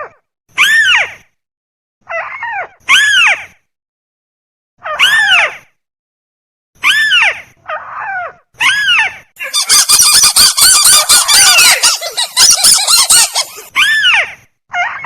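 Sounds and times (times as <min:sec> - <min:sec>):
crake calls: 0:09.4 - 0:13.7.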